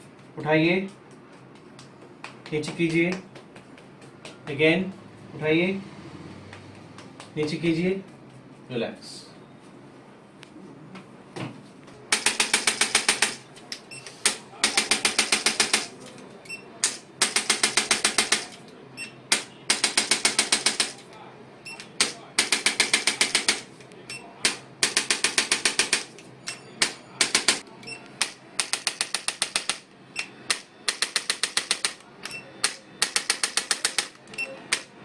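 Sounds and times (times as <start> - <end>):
electric percussion rapid taps: 12.1 - 13.4, 14.2 - 15.9, 19.3 - 21.0, 21.9 - 23.6, 24.4 - 27.6.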